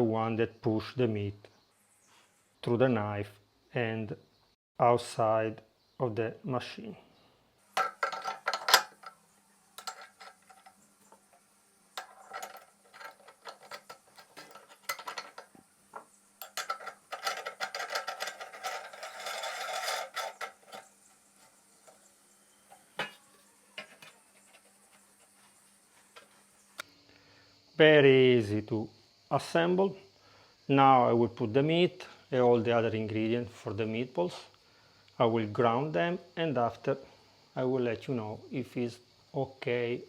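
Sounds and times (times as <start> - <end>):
metal clinks and knocks: 7.8 - 9.2, 9.8 - 11.4, 12.0 - 22.1
metal scraping and rattling: 7.8 - 9.2, 9.8 - 11.4, 12.0 - 15.6, 16.4 - 22.1.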